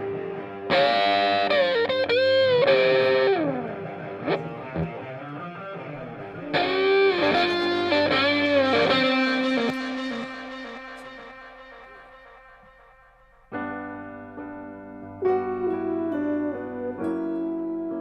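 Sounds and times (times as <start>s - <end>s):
distorted electric guitar bending notes: 0.0s - 13.8s.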